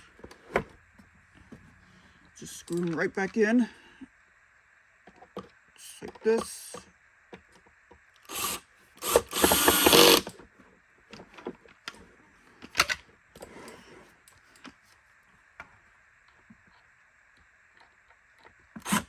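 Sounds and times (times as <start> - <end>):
screwdriver driving screws: 8.3 - 10.3, 18.8 - 19.0.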